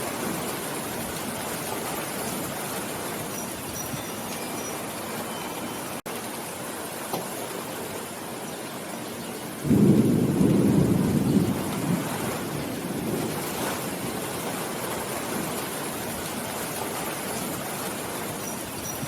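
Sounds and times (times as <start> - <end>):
steady rain: 0.0 - 19.0
low rumble of thunder: 9.6 - 16.6.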